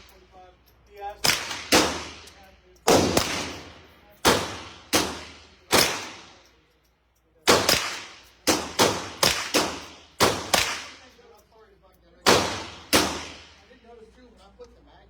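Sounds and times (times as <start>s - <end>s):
pistol shots with ringing echo: 1.2s - 6.6s, 7.4s - 11.4s, 12.2s - 13.8s.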